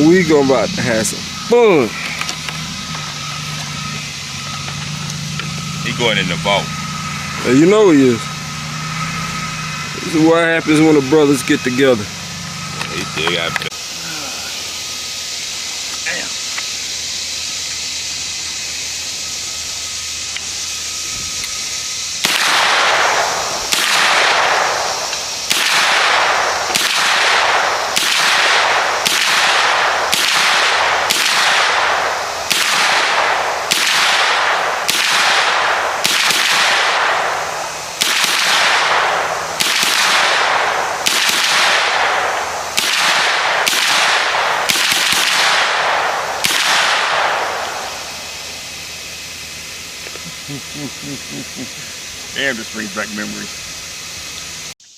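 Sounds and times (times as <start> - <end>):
steady hiss: 0.0 - 54.9
gunshots with ringing decay: 22.2 - 49.8.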